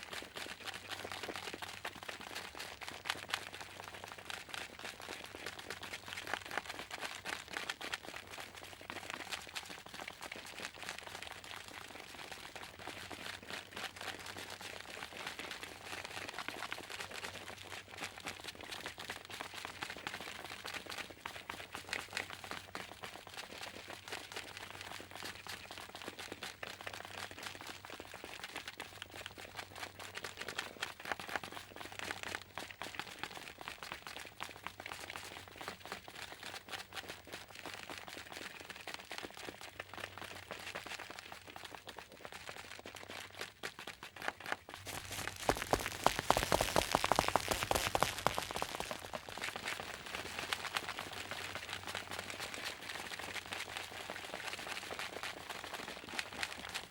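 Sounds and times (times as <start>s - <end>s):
sharp footsteps: 44.8s - 50.4s.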